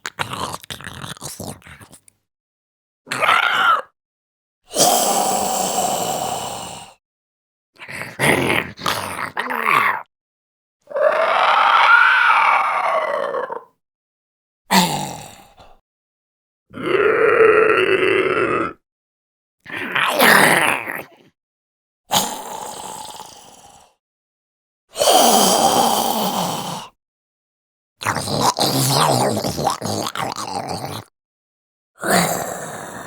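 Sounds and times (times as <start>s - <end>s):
person groaning and growling: 0.0s - 2.0s, 3.1s - 3.9s, 14.7s - 15.8s, 16.7s - 18.8s, 19.7s - 21.4s, 28.0s - 31.1s, 32.0s - 33.0s.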